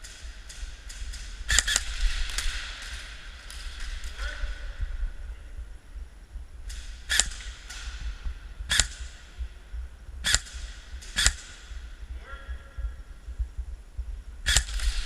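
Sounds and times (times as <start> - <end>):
airsoft gun shots: 0.0 - 4.1, 6.7 - 9.4, 10.2 - 11.9, 14.5 - 15.0.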